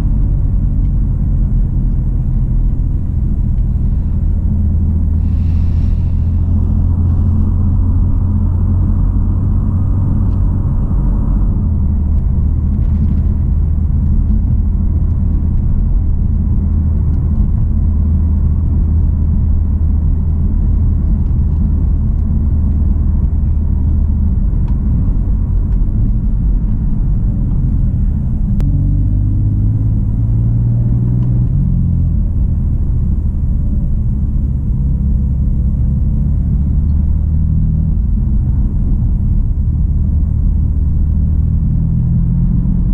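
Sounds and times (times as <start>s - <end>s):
car engine running: 0.0s - 42.9s.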